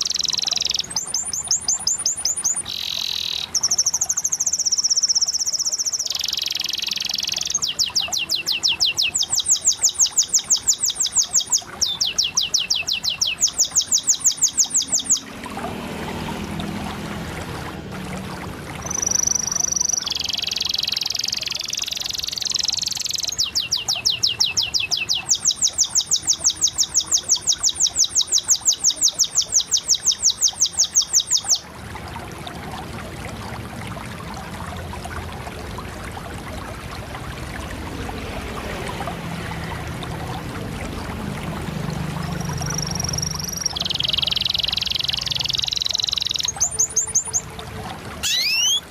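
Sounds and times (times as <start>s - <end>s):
canary singing trill: 0.0s - 15.3s, 18.8s - 31.7s, 42.3s - 47.5s, 48.2s - 48.9s.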